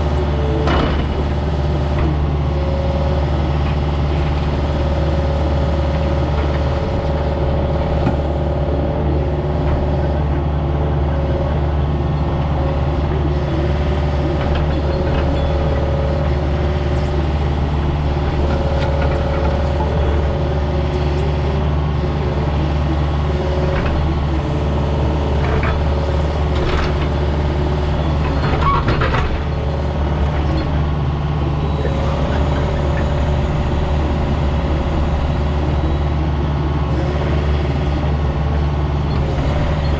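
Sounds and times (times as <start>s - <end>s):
diesel engine running: 0.0s - 39.9s
knocks and clatters: 28.0s - 29.5s.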